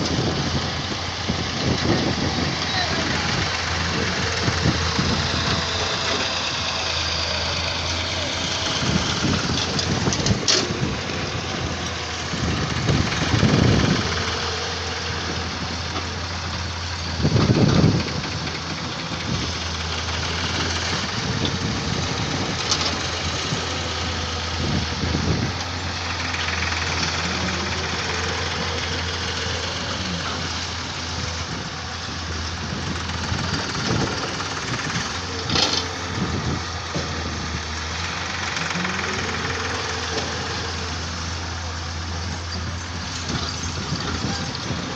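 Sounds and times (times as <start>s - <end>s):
excavator diesel engine running: 0.0s - 44.9s.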